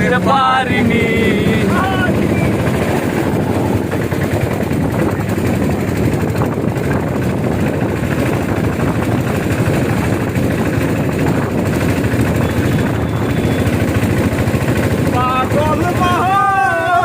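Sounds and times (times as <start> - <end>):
road and wind noise: 0.0 - 17.0
vehicle engine running: 0.0 - 17.0.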